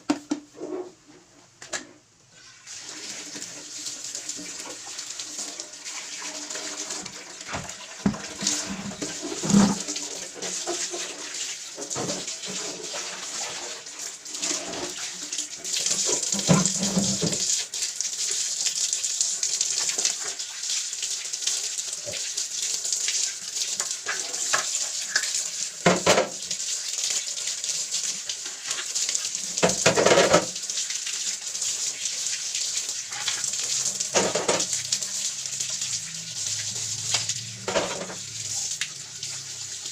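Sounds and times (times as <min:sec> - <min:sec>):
tap water running into sink: 0:02.6 - 0:39.9
items knocking and clattering: 0:07.5 - 0:09.9, 0:25.8 - 0:26.4, 0:29.6 - 0:30.5, 0:34.1 - 0:34.7, 0:37.6 - 0:38.2.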